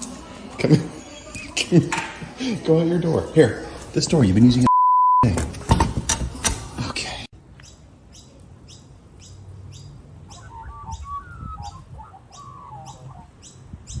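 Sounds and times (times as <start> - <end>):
bird chirping high: 7.6 - 14.0
lower warbling whistled bird call: 10.3 - 14.0.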